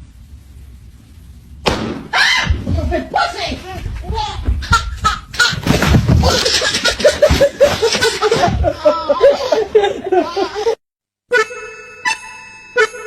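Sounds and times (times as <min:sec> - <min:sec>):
people laughing hard: 0:06.2 - 0:10.8.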